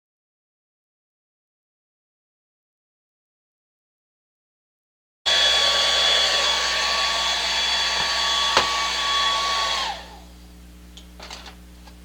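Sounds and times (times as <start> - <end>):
hair dryer motor whine: 5.3 - 10.4.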